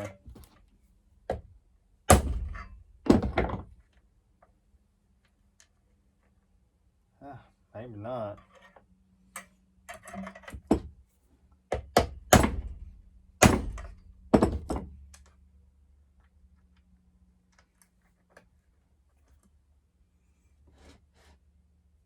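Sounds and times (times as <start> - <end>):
faint low hum: 0.0 - 20.9
knocks and thunks on bench: 2.1 - 3.7, 10.6 - 11.0, 11.7 - 15.0.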